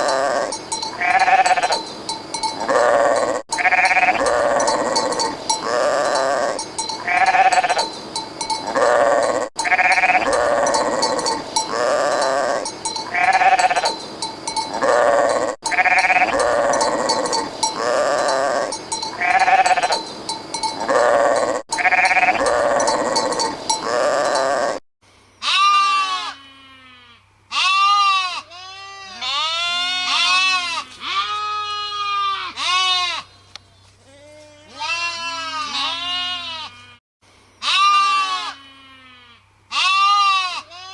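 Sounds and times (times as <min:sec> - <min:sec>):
sheep bleating: 0:00.0 - 0:01.8, 0:02.6 - 0:07.9, 0:08.6 - 0:14.0, 0:14.7 - 0:20.0, 0:20.7 - 0:24.8, 0:25.4 - 0:33.2, 0:34.1 - 0:37.0, 0:37.6 - 0:40.9.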